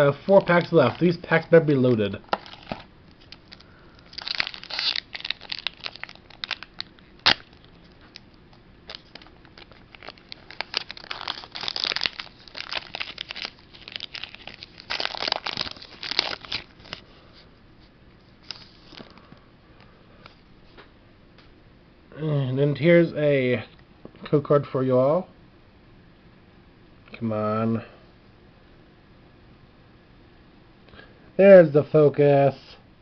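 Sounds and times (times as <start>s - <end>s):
foil wrapper crinkling and tearing: 0.0s - 1.4s, 2.3s - 17.1s.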